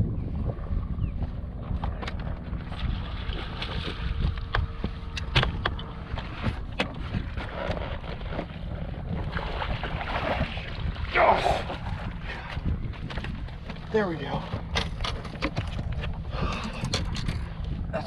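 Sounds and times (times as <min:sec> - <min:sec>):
wind rumbling on microphone: 0:00.0 - 0:18.0
sharp clicks and knocks: 0:04.3 - 0:07.8, 0:14.6 - 0:17.5.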